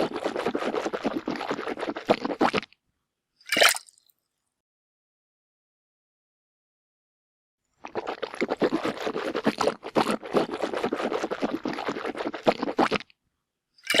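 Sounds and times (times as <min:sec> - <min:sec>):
mouthwash swishing in mouth: 0:00.0 - 0:02.6, 0:07.8 - 0:13.0.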